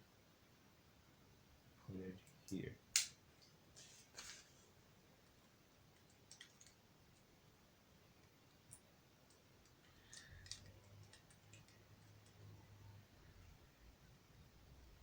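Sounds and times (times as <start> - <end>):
faint low hum: 0.0 - 15.0
plastic building bricks clicking: 6.0 - 6.8, 9.3 - 12.5.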